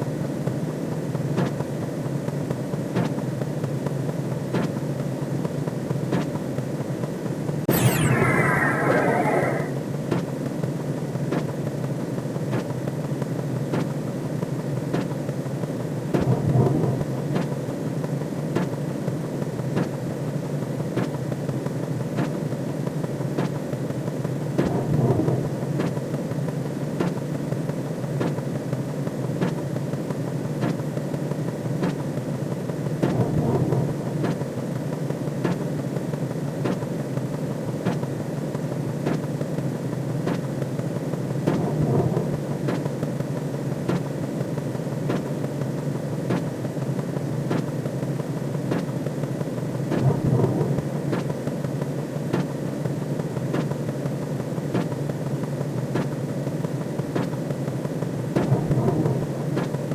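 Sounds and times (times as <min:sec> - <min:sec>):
low rumbling drone: 0:41.5 - 0:42.7.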